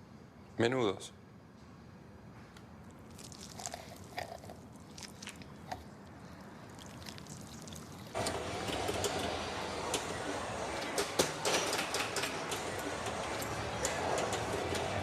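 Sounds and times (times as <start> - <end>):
steady background noise: 0.0 - 15.0
chewing crunches: 2.9 - 8.2.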